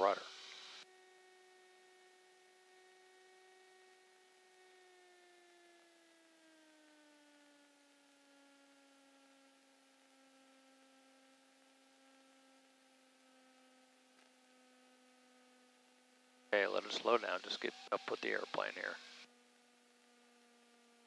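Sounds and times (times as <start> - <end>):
faint electrical hum: 6.8 - 21.0.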